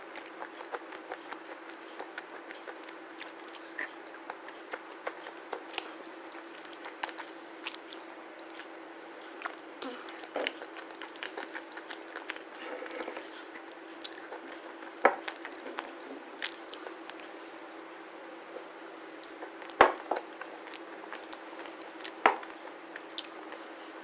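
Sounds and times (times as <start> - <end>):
crunchy chewing: 0.0 - 23.9.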